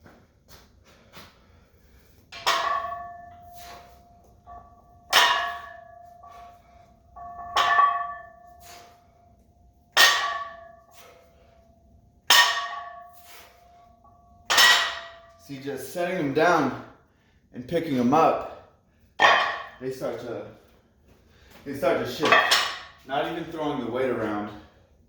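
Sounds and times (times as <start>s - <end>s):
weight plates clanking on barbell: 2.4s - 6.6s, 7.2s - 8.9s, 12.3s - 13.4s, 22.2s - 23.0s.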